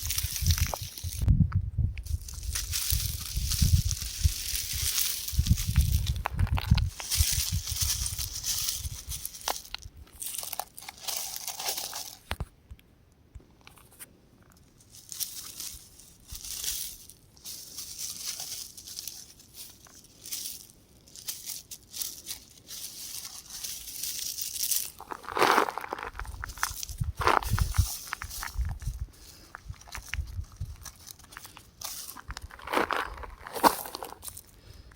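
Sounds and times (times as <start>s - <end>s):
rock crumbling and crunching: 0.0s - 1.4s, 2.0s - 12.4s, 14.5s - 34.9s.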